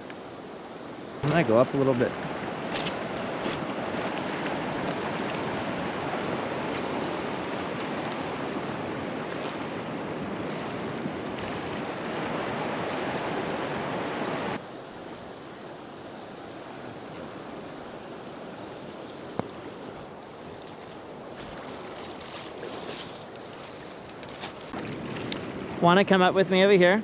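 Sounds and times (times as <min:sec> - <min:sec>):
river water rushing: 0:00.0 - 0:24.8.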